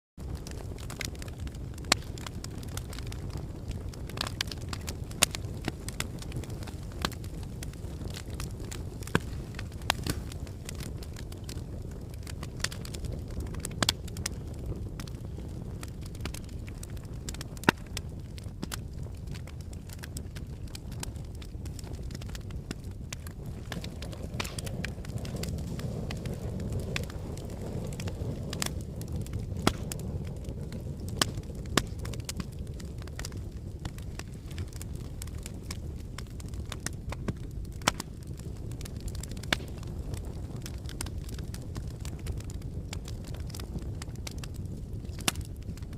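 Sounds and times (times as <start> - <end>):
logs crackling and popping: 0.2 - 45.9
low rumble of flames: 0.2 - 45.9.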